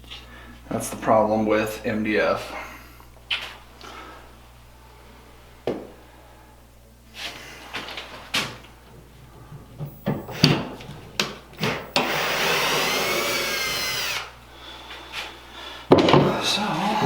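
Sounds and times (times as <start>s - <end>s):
wood and tools knocking: 9.8s - 14.1s
small power tool motor: 9.9s - 10.7s, 11.6s - 14.3s.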